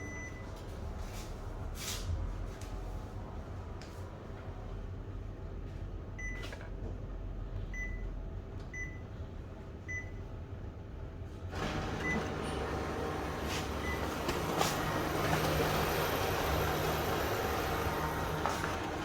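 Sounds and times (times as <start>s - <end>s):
photocopier humming: 11.5s - 19.0s
photocopier mechanical running: 11.5s - 19.0s.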